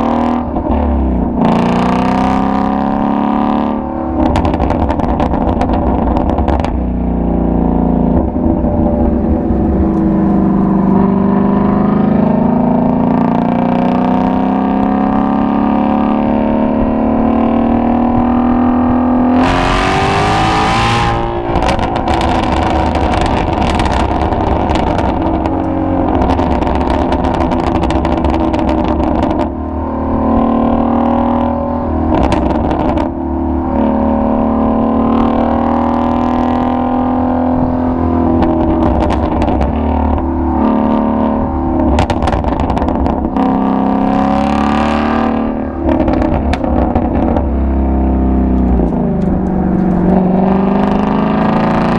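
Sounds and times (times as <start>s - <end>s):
car exhaust pulling through a gear: 0.0s - 51.9s
exhaust pops and crackles: 4.2s - 6.9s, 8.1s - 11.8s, 21.0s - 29.8s, 31.8s - 34.8s, 37.6s - 44.1s, 45.4s - 51.7s.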